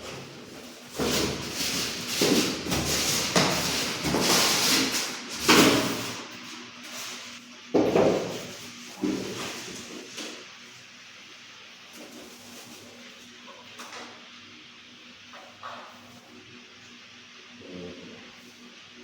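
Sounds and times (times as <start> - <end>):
cardboard packaging scraping: 0.6 - 7.3.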